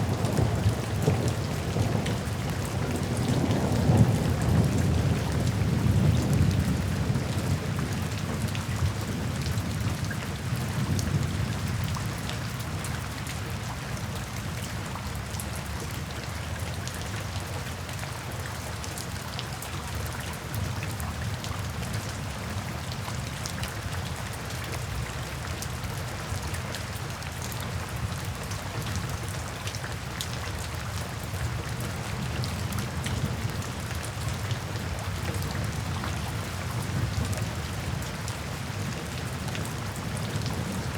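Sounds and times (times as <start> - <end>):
rumble of thunder: 0.0 - 12.2, 32.2 - 40.9
heavy rain falling: 0.0 - 40.9.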